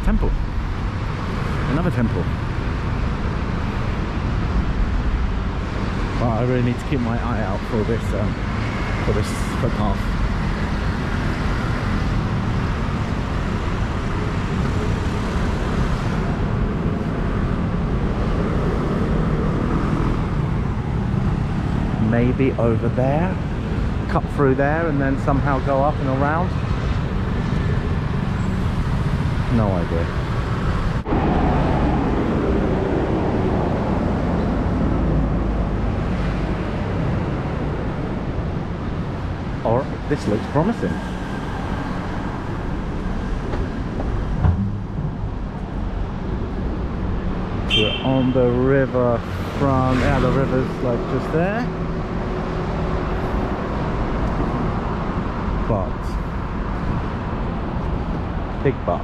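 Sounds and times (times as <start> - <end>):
road traffic rumble: 0.0 - 59.0.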